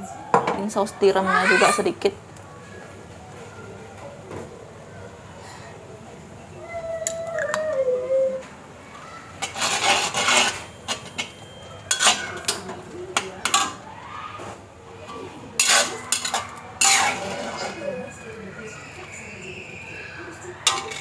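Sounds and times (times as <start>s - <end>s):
utensil scraping a pan: 9.4s - 12.8s, 15.6s - 18.1s, 20.6s - 21.0s.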